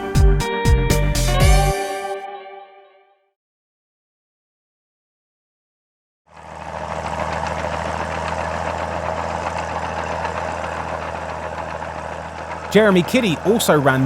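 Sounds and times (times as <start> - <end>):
crawler tractor diesel engine running: 6.3 - 14.0.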